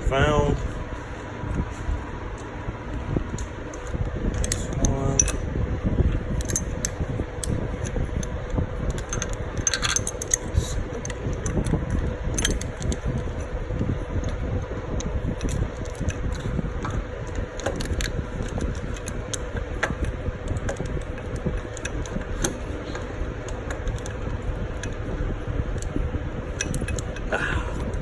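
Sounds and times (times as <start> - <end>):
faint hum: 0.0 - 28.0
steady low rumble: 0.0 - 28.0
metallic clicks of bolts and tools: 8.9 - 11.8.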